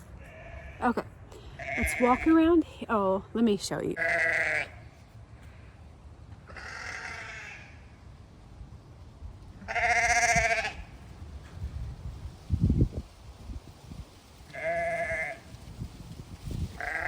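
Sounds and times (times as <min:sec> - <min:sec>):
sheep bleating: 0:00.2 - 0:02.4, 0:04.0 - 0:04.8, 0:06.5 - 0:07.8, 0:09.7 - 0:10.8.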